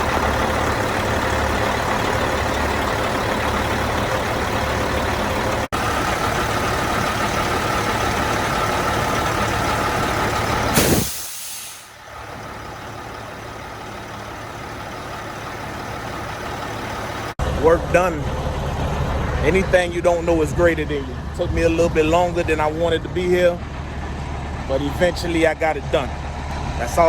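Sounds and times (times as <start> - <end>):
diesel truck engine running: 0.0 - 27.0
air dryer purge blast: 10.7 - 12.0.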